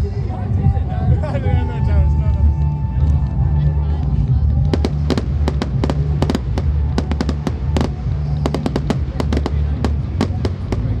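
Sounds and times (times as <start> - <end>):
low rumble: 0.2 - 11.0
fireworks bangs and cracks: 4.6 - 11.0.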